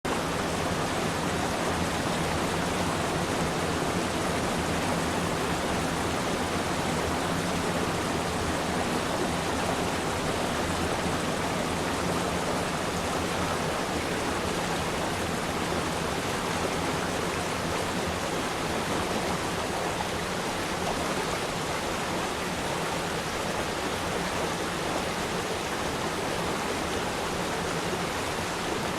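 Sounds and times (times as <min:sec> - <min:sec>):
steady rain: 0:00.1 - 0:21.3.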